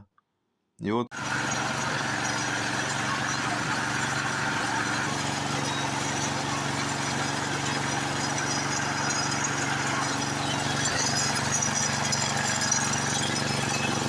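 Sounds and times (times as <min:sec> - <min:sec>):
small engine running: 0:01.1 - 0:14.0.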